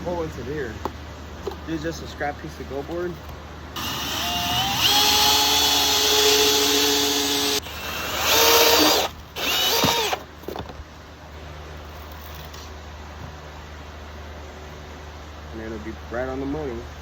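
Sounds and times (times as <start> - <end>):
power drill motor running: 3.8 - 10.2.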